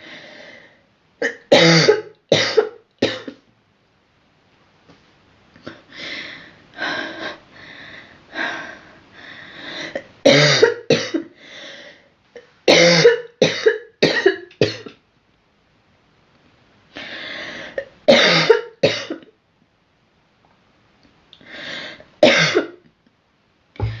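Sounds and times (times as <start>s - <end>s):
girl coughing: 1.2s - 3.3s, 10.3s - 11.3s, 12.7s - 14.9s, 18.1s - 19.2s, 22.2s - 22.8s.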